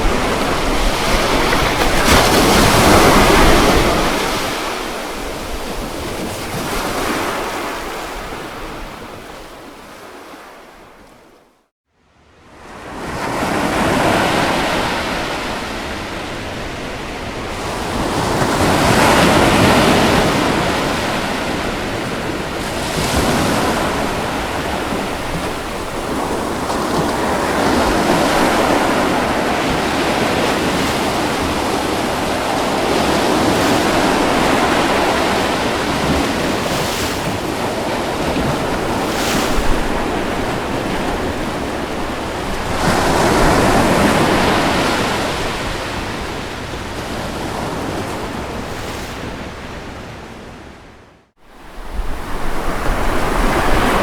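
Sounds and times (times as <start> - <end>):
ocean waves washing ashore: 0.0 - 54.0.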